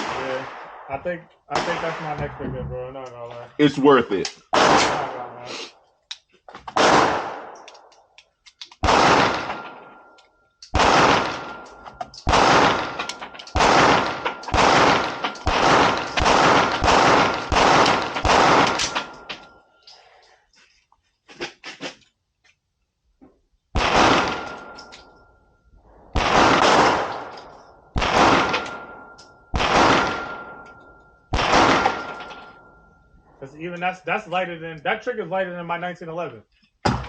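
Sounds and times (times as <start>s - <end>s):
pistol shots echoing: 0.0s - 2.2s, 4.4s - 5.4s, 6.7s - 7.9s, 8.8s - 19.5s, 23.8s - 24.9s, 26.1s - 32.8s.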